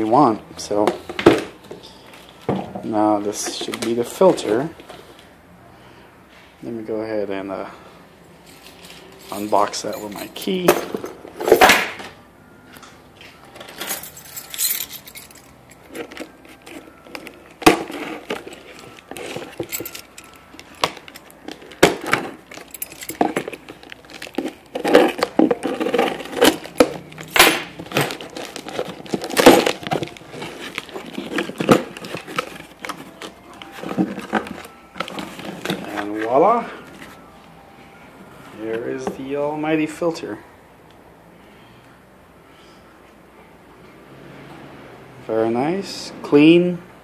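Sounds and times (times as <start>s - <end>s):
keys clinking: 8.4s - 11.8s, 13.5s - 36.3s.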